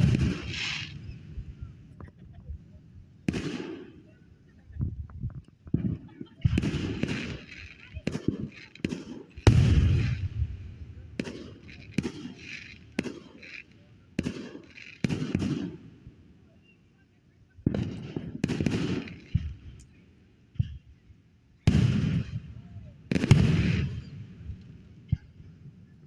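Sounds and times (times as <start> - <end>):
fireworks bursting: 0.0 - 2.5, 3.2 - 4.7, 5.5 - 16.0, 17.6 - 20.0, 21.7 - 25.6.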